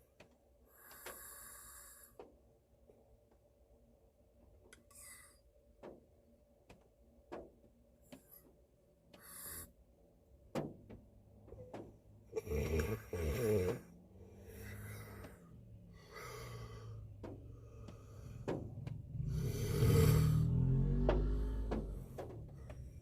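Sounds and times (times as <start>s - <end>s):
faint ticks: 0.2s - 1.3s
man snoring: 12.4s - 15.4s, 16.0s - 17.0s, 19.1s - 22.1s.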